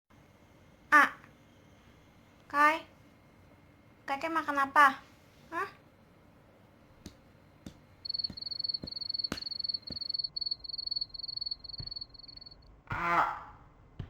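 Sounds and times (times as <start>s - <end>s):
cricket chirping: 8.0s - 12.6s.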